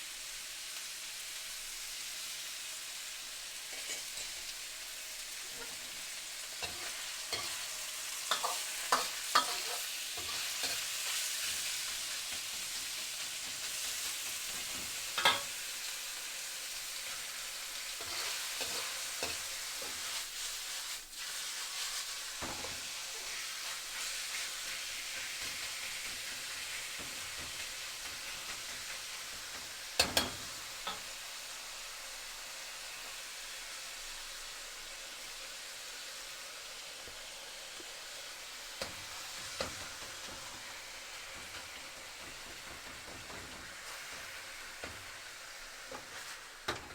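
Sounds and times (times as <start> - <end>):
food sizzling in a pan: 0.0 - 46.9
utensil scraping a pan: 5.4 - 12.5, 17.9 - 31.0, 38.8 - 46.9.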